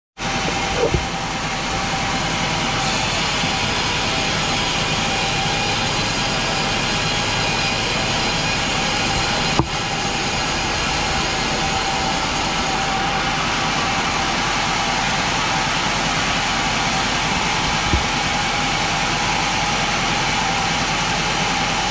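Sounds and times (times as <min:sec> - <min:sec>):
chainsaw cutting log: 0:00.3 - 0:02.0, 0:02.8 - 0:13.0, 0:15.2 - 0:20.0
brief knocks: 0:09.5 - 0:10.1, 0:17.6 - 0:18.2.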